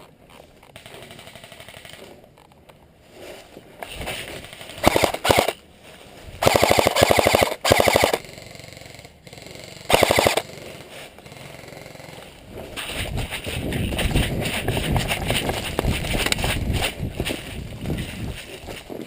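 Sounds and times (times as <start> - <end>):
airsoft rifle bursts: 4.4 - 5.6, 6.4 - 8.2, 9.9 - 10.5.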